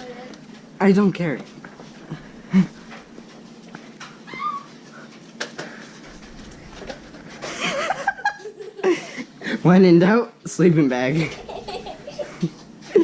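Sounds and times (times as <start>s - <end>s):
dog whine: 4.2s - 4.8s.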